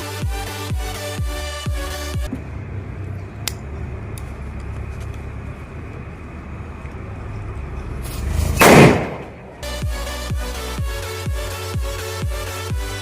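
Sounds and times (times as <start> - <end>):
steady background noise: 1.8 - 12.5
firecracker bang: 8.3 - 9.5.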